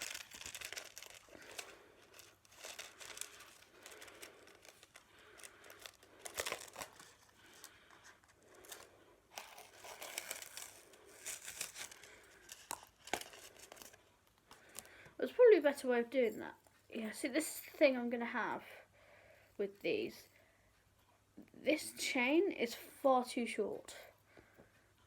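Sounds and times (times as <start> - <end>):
paper and packaging rustling: 0.0 - 15.1.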